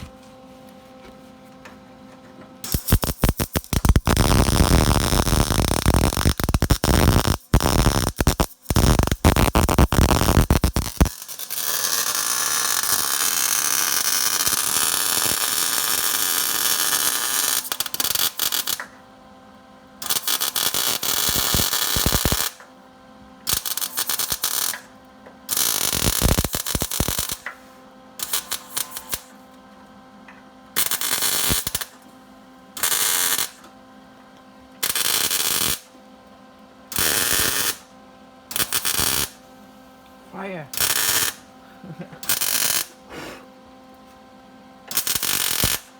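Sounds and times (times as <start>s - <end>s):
electrical hum: 0.0s - 11.3s, 36.1s - 44.9s
arc welding crackling and hissing: 2.6s - 18.9s, 20.0s - 22.6s, 23.4s - 24.9s, 25.5s - 29.4s, 30.7s - 32.0s, 32.8s - 33.6s, 34.8s - 36.0s, 36.9s - 37.9s, 38.5s - 39.4s, 40.3s - 43.4s, 44.9s - 45.9s.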